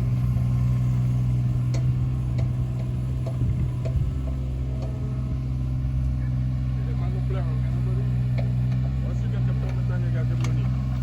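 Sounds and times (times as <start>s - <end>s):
engine running with low hum: 0.0s - 11.0s
light clicks and knocks: 8.3s - 11.0s.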